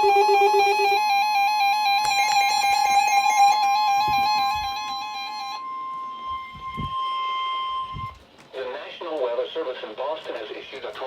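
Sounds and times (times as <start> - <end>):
rapidly warbling electronic tone: 0.0 - 7.0
steady high alarm tone: 0.0 - 8.2.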